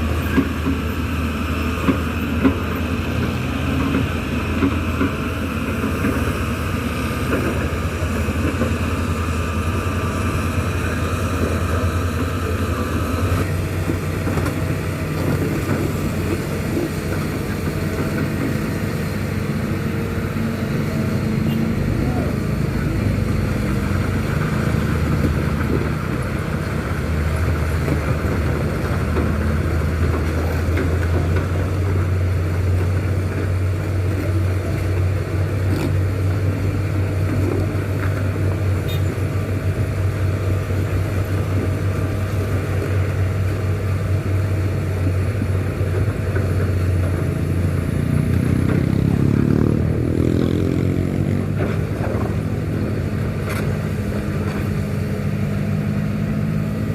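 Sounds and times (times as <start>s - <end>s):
diesel engine droning under load: 0.0s - 56.9s
engine revving up: 47.4s - 52.3s.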